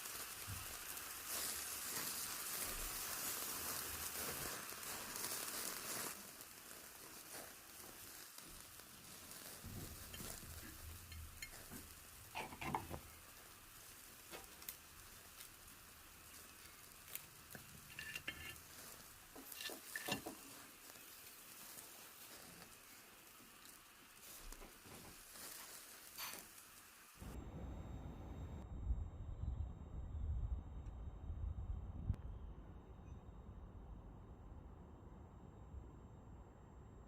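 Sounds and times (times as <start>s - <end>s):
food sizzling in a frying pan: 0.0s - 27.4s
utensils clinking against dishes: 19.4s - 20.6s.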